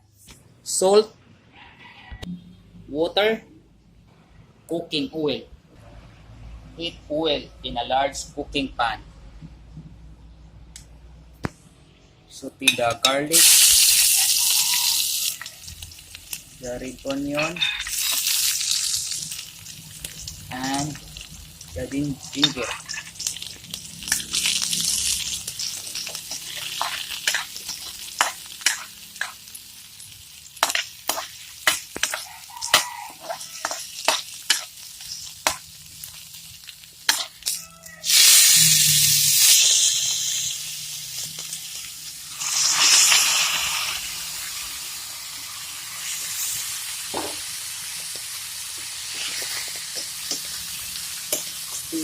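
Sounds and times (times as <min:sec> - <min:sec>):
food sizzling in hot oil: 0:13.0 - 0:52.0
spatula scraping a pan: 0:24.1 - 0:29.3, 0:30.6 - 0:35.6.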